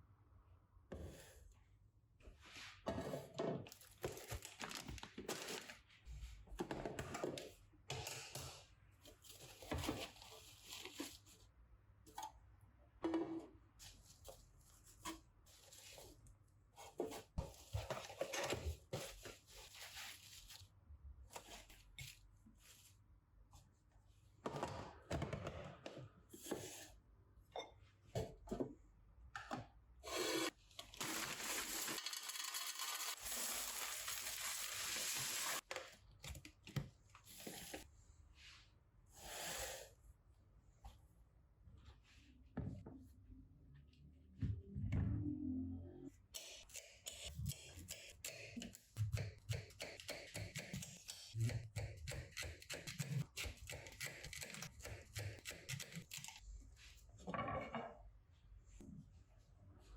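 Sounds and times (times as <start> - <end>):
paper rustling and tearing: 30.9 - 35.6.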